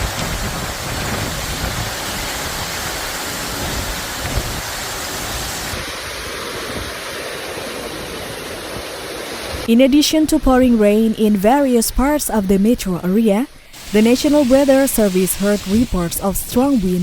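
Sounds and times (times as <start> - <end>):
heavy rain pouring: 0.0 - 9.7, 13.8 - 17.0.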